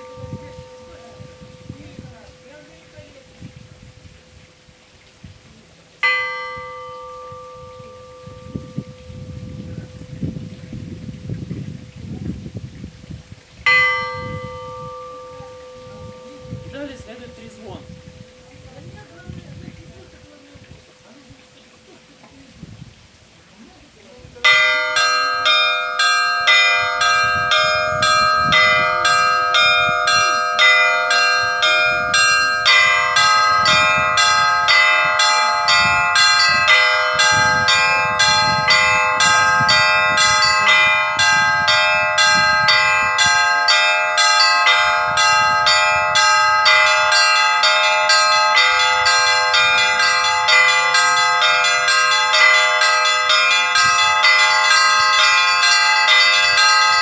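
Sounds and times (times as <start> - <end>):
church bells ringing: 0.0 - 4.4, 6.0 - 12.3, 13.7 - 21.0, 24.4 - 57.0.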